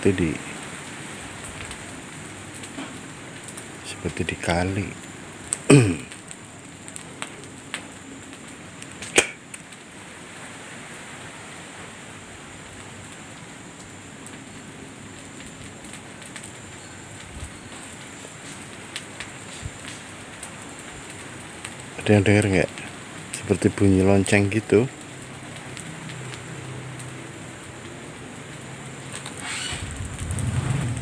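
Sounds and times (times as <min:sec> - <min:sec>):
outdoor night noise hiss: 0:00.0 - 0:31.0.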